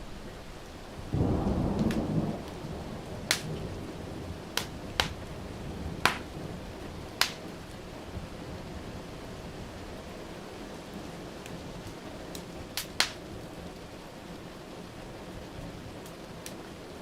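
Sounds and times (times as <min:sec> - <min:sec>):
thunder rumble: 0:00.0 - 0:09.8
steady rain: 0:00.0 - 0:17.0
wood fire crackling and popping: 0:01.4 - 0:03.8, 0:04.4 - 0:06.4, 0:07.0 - 0:07.8, 0:11.5 - 0:13.9, 0:16.0 - 0:16.6.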